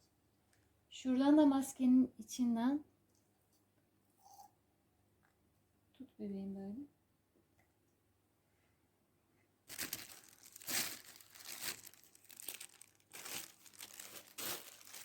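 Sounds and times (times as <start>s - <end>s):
plastic packaging crinkling: 9.7s - 15.0s.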